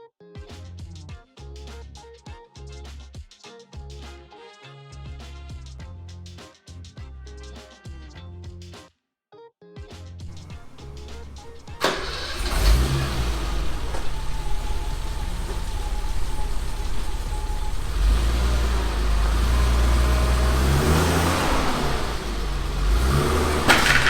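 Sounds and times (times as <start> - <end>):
car engine revving: 10.3 - 24.0.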